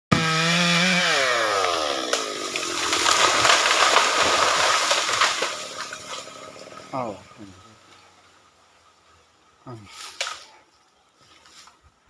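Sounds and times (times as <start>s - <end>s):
chainsaw running: 0.1s - 7.2s
sharp cracks: 1.6s - 6.4s.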